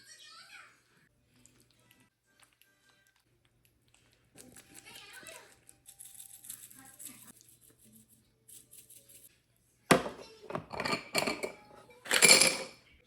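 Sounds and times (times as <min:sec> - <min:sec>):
dishes clattering: 0:09.9 - 0:12.8.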